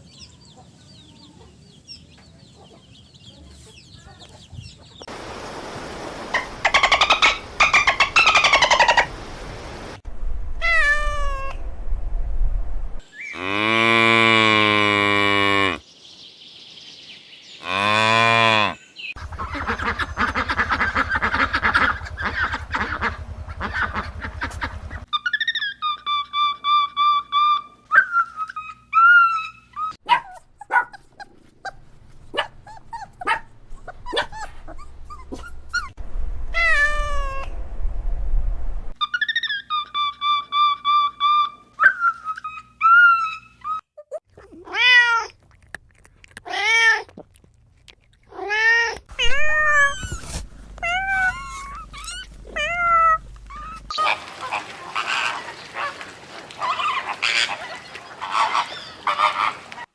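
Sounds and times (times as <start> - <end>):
cats meowing: 48.3 - 54.4.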